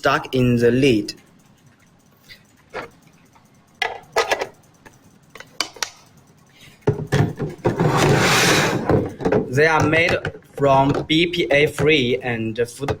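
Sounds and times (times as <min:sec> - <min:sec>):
plastic containers knocking and clicking: 0:03.8 - 0:04.6, 0:05.3 - 0:06.0, 0:06.8 - 0:12.2, 0:12.8 - 0:13.0.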